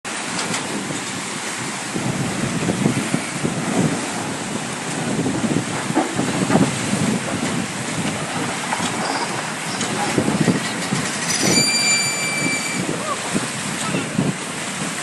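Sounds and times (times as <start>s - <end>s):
sea waves: 0.1s - 15.0s
wind buffeting microphone: 0.1s - 15.0s
thin high tone: 11.3s - 12.8s.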